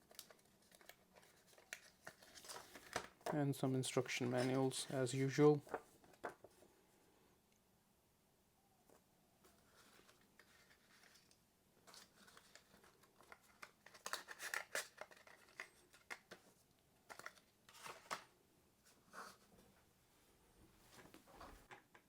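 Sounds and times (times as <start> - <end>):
paper packaging rustling: 0.0 - 6.6, 8.9 - 18.3.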